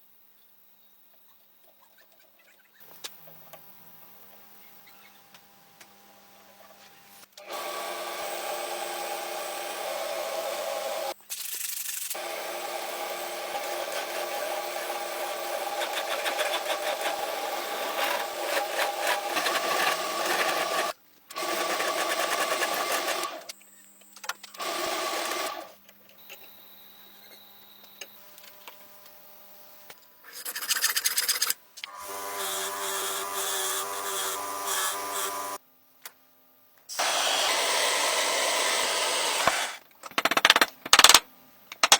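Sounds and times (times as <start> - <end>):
electric tool sanding metal: 12.2 - 23.5, 30.4 - 35.6, 36.9 - 39.8
rubbing and filing noises: 15.5 - 20.9, 30.2 - 31.6.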